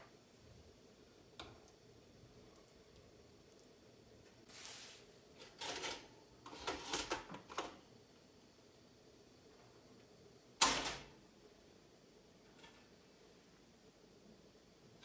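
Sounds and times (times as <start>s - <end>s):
objects scraping and rustling: 4.5s - 7.1s.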